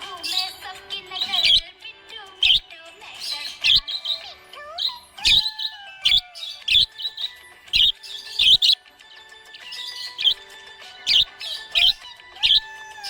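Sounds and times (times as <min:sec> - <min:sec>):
parrots chirping: 0:00.0 - 0:01.7, 0:02.4 - 0:08.8, 0:09.6 - 0:13.0
parrot whistles and warbles: 0:01.1 - 0:01.7, 0:02.4 - 0:08.8, 0:09.6 - 0:10.4, 0:11.1 - 0:13.0.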